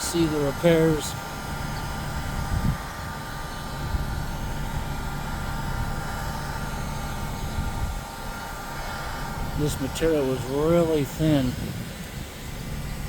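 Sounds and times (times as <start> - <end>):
blower whirring: 0.0 - 13.0.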